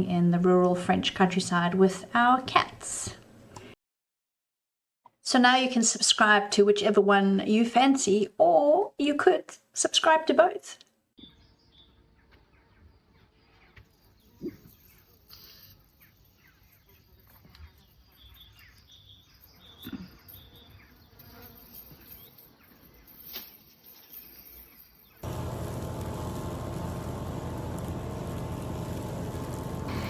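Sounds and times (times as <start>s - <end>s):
flying insects buzzing: 13.8s - 30.0s
insect buzzing past close: 19.6s - 22.4s.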